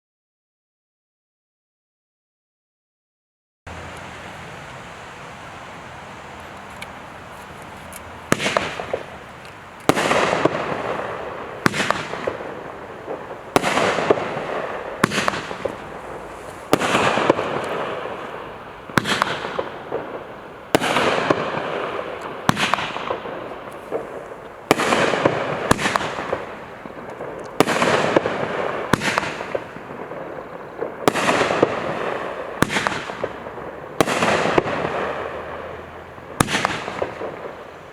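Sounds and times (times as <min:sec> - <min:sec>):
steady hiss: 0:03.7 - 0:37.9
firework bangs with crackle: 0:06.7 - 0:37.9.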